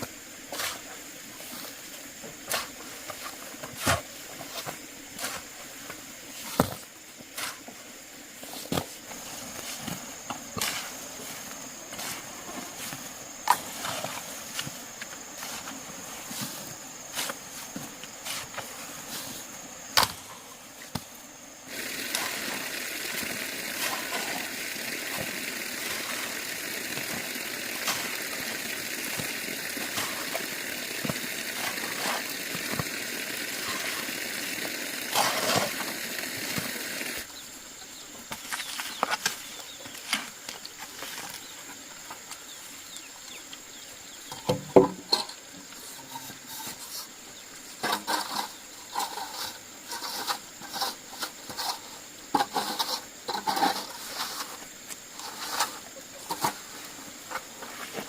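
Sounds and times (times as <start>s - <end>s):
rushing water noise: 21.3s - 37.3s.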